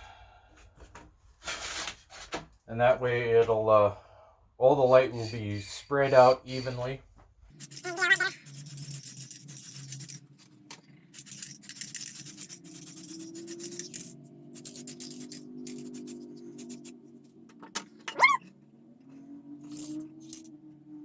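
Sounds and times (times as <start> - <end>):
spray paint can hissing: 7.6 - 10.2, 11.2 - 16.9.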